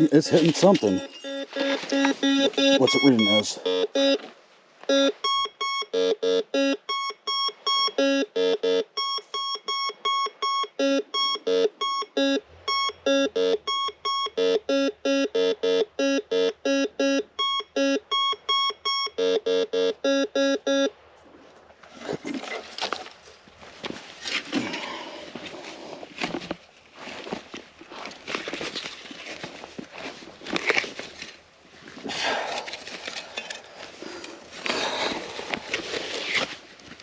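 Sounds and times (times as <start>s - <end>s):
rustling and scraping: 0.0s - 2.7s, 21.2s - 37.0s
metal detector beeps: 0.0s - 4.2s, 4.9s - 20.9s.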